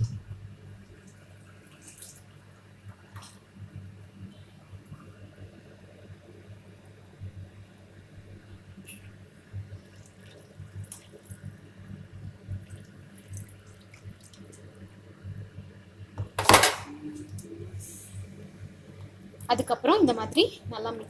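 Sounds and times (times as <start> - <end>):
low steady hum: 0.0 - 3.0, 16.2 - 21.0.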